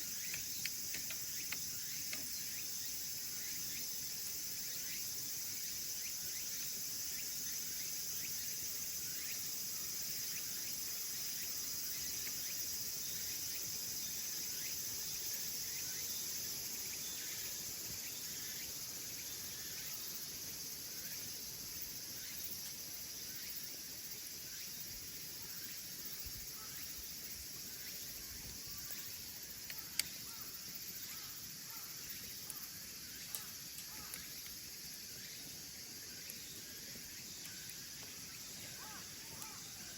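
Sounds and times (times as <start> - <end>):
firewood crackling in a stove: 0.0 - 6.8, 28.1 - 30.3, 32.0 - 39.9
insects chirping: 0.0 - 39.9.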